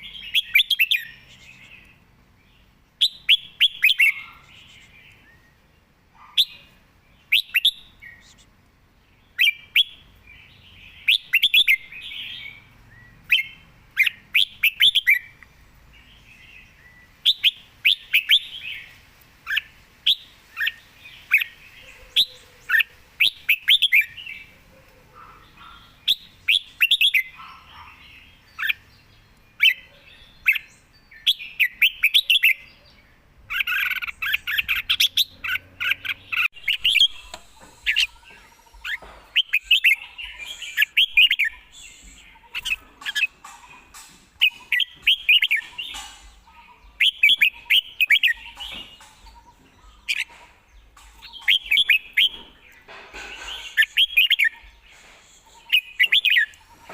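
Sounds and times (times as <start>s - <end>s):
bird singing chirpy phrases: 0.0s - 56.9s.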